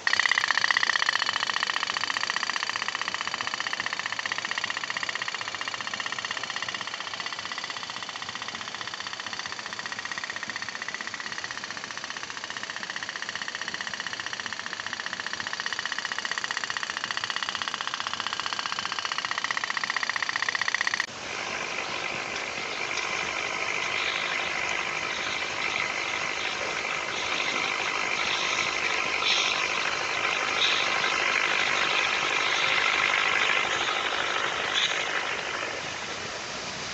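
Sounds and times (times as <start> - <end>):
toy steam boat engine putt-putting: 0.0 - 36.3.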